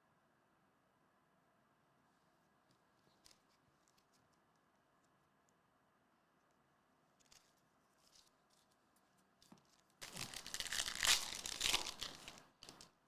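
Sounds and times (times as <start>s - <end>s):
foil wrapper tearing and crinkling: 10.0s - 12.9s.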